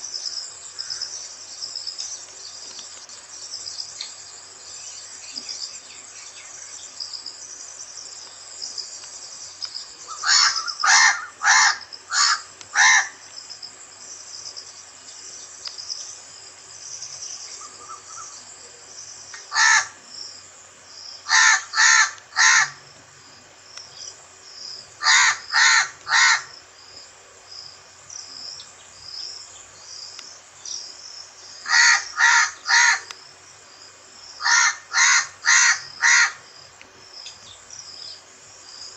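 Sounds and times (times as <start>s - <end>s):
insects chirring: 0.0s - 38.9s
crow cawing: 10.1s - 13.2s, 19.4s - 20.0s, 21.3s - 22.8s, 25.0s - 26.5s, 31.6s - 33.1s, 34.4s - 36.5s.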